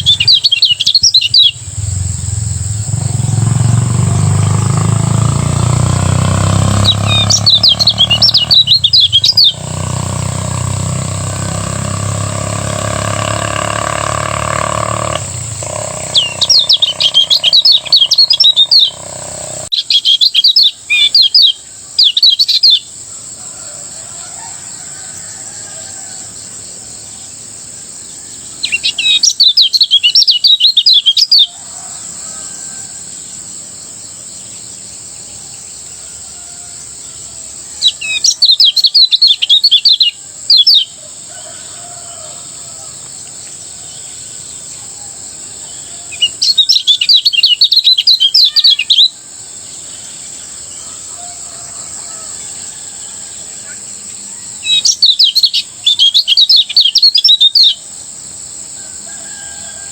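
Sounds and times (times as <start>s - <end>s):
faint soft chirping: 0.0s - 3.9s, 6.0s - 22.8s
bird singing high chirps: 0.0s - 23.0s, 28.2s - 31.6s, 37.8s - 42.2s, 43.2s - 57.8s.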